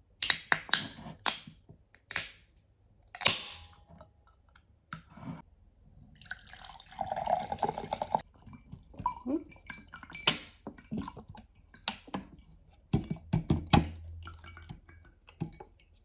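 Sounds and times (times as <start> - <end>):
water dripping: 6.0 - 16.0
water splashing: 6.2 - 16.0.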